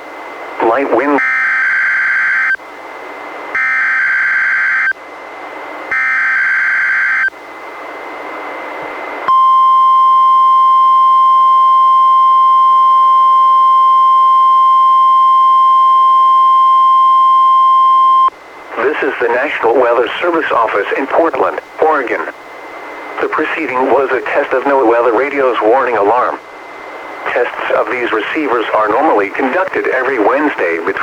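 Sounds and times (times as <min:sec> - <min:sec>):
steady warning alarm tone: 0:00.3 - 0:02.6, 0:03.5 - 0:05.0, 0:05.9 - 0:07.4, 0:09.3 - 0:21.9
radio hiss: 0:00.5 - 0:01.2, 0:18.6 - 0:31.0.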